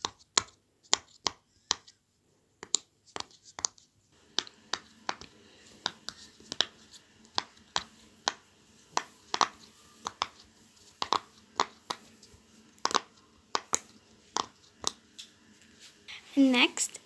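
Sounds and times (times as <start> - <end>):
fidget toy bubbles popping: 11.0 - 12.0, 12.8 - 15.0.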